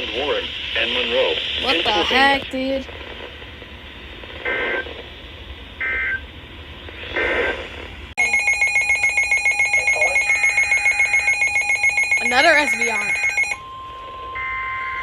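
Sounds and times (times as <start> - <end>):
radio hiss: 0.0 - 5.9, 6.8 - 7.9
digital data bursts: 1.1 - 2.8, 8.2 - 13.6
pulsing electronic alert tone: 8.2 - 13.6.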